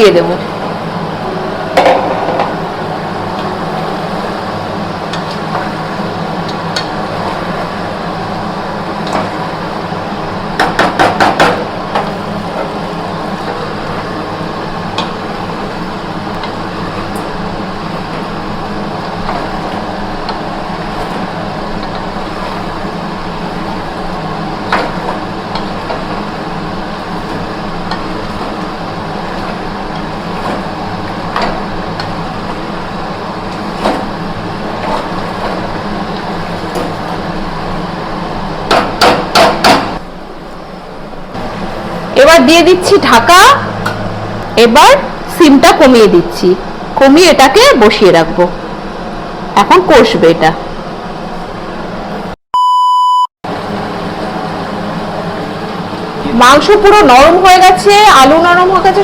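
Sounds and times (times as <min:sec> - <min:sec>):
spatula scraping and knocking pan: 0:16.3 - 0:37.6.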